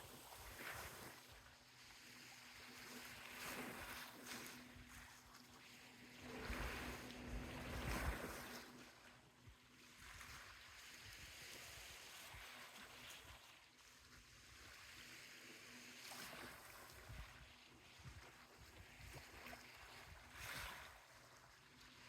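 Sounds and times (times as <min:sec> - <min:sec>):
faint steady hum: 0:00.0 - 0:12.1
sea waves washing on beach: 0:00.0 - 0:22.0.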